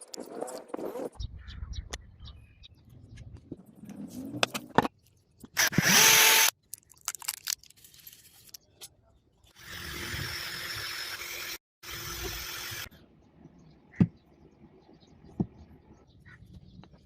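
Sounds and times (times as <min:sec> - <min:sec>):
handheld power tool running: 0:05.6 - 0:06.5, 0:09.6 - 0:12.9.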